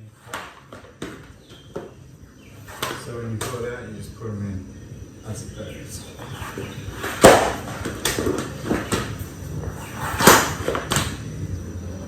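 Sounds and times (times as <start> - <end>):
vinyl planks knocking and clattering: 0.3 - 2.0, 6.2 - 11.2.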